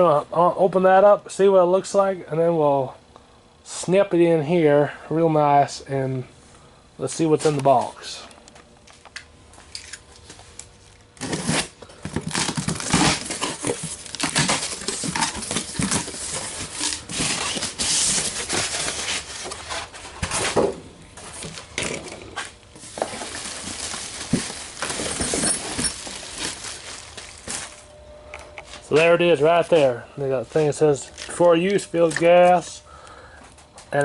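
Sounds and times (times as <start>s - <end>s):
packing material rustling and tearing: 11.2s - 20.6s, 22.4s - 27.9s.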